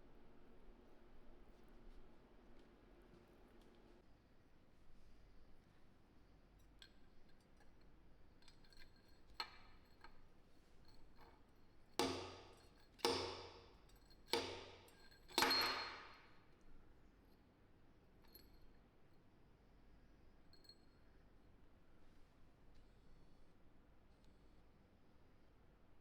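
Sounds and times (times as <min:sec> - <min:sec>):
sharp ringing knocks: 0:12.0 - 0:13.7, 0:14.3 - 0:16.1.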